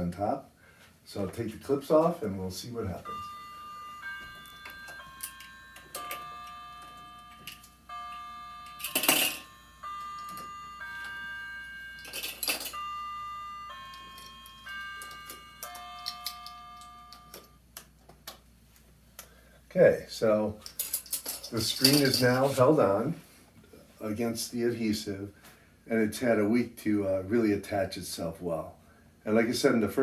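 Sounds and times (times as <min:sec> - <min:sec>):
bell-like chiming melody: 0:02.9 - 0:17.6.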